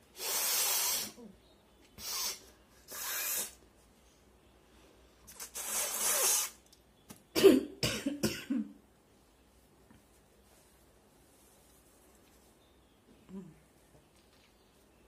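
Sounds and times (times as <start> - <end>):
woman blowing her nose: 0.1 - 1.2, 2.0 - 3.6, 5.3 - 6.6
short coughs: 7.4 - 8.7.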